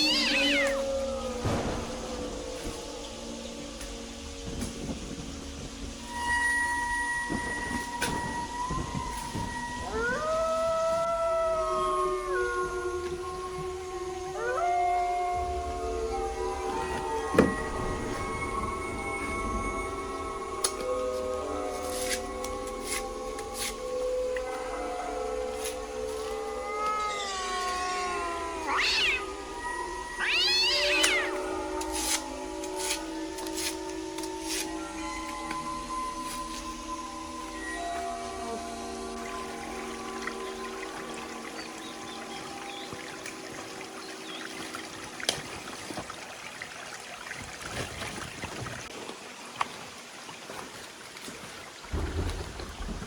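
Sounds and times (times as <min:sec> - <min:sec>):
cat meowing: 0:00.0 - 0:00.9, 0:26.6 - 0:29.3, 0:30.2 - 0:31.4
running water rushing: 0:00.0 - 0:53.0
wind rumble on microphone: 0:51.8 - 0:53.0.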